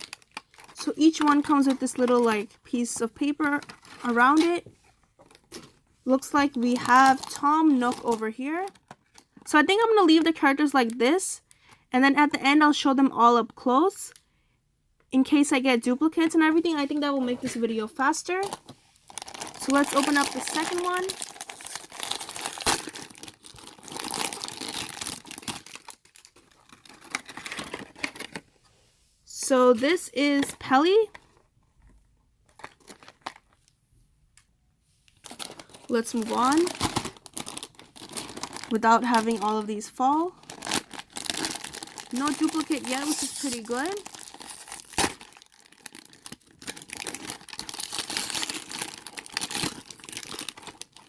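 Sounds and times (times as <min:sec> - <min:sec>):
plastic foil bag crackling: 0:00.0 - 0:02.4, 0:18.3 - 0:28.4, 0:35.2 - 0:51.0
packaging crinkling and tearing: 0:00.0 - 0:02.6, 0:03.2 - 0:04.5, 0:18.3 - 0:28.4, 0:32.5 - 0:33.8, 0:35.1 - 0:51.0.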